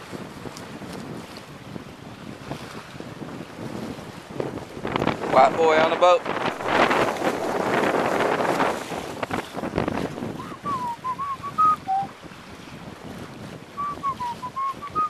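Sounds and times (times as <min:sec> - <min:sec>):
wind buffeting microphone: 0:00.0 - 0:15.0
person whistling: 0:10.4 - 0:12.1, 0:13.8 - 0:15.0.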